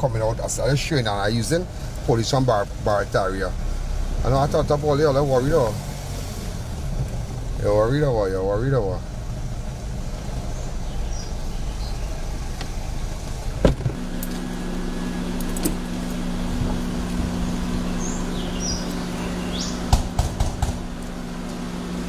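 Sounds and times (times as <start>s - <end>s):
car engine and road noise rumble: 0.0s - 22.0s
knock: 19.9s - 20.8s.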